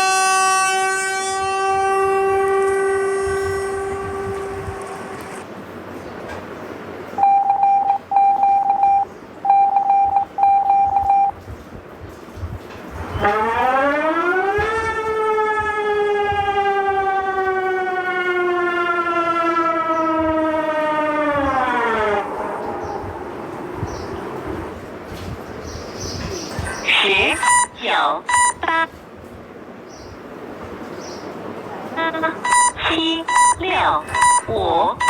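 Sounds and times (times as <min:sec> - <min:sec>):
siren wail: 0:00.0 - 0:05.4, 0:13.0 - 0:25.0, 0:26.8 - 0:28.9, 0:31.9 - 0:35.0
short steady alarm beeps: 0:07.2 - 0:11.4, 0:27.3 - 0:28.9, 0:32.0 - 0:35.0.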